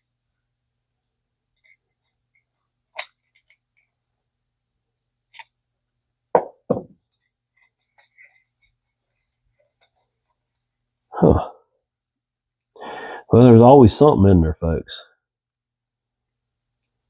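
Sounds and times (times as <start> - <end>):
small metal parts clicking: 1.6 - 3.9
knocks: 6.4 - 7.0.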